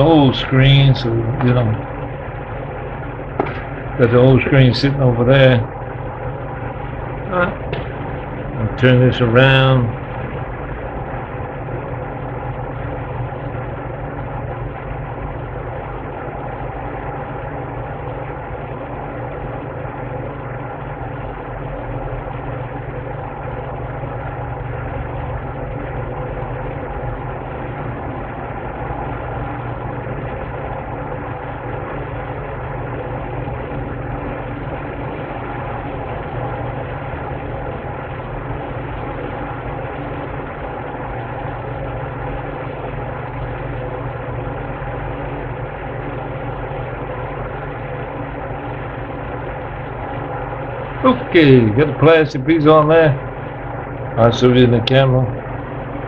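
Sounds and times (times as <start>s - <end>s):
steady machine hum: 0.0s - 56.0s.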